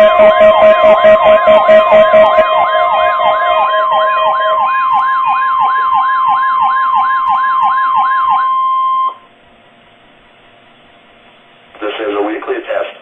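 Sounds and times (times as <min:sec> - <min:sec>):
steady alert tone: 0:00.0 - 0:09.2
sweeping siren-like tone: 0:00.0 - 0:09.2.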